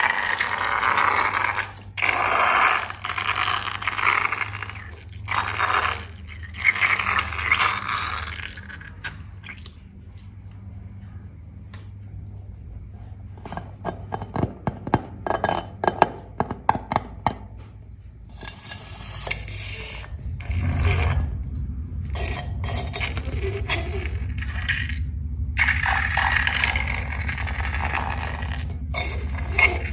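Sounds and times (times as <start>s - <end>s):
slime squelching: 0.0s - 10.3s, 22.1s - 29.9s.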